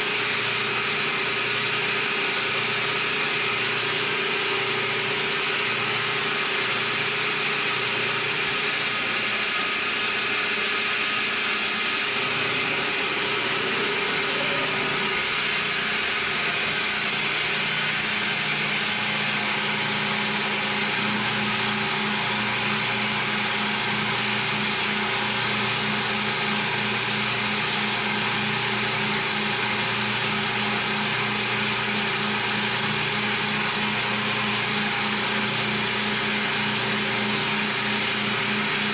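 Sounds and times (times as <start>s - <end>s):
milling machine cutting: 0.0s - 38.9s.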